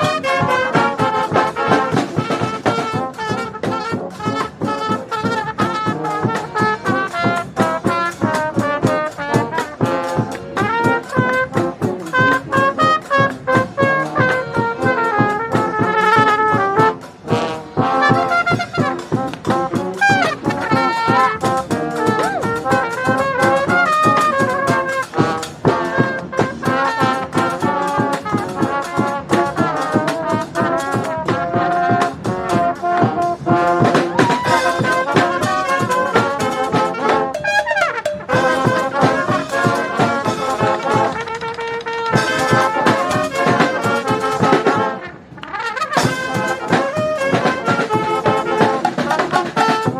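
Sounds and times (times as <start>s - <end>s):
trumpets and trombones playing: 0.0s - 49.9s
percussion hits: 17.1s - 31.2s, 32.1s - 44.9s, 45.5s - 49.9s.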